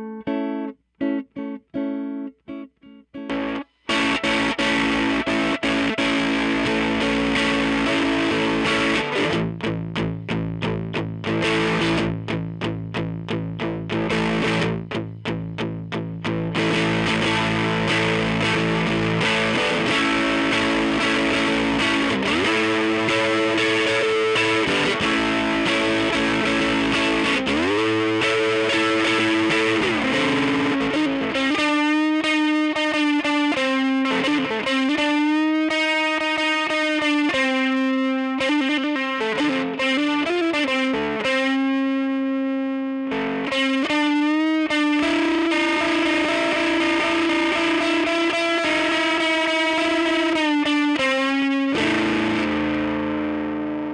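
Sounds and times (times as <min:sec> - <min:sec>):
distorted electric guitar: 0:00.0 - 0:53.9.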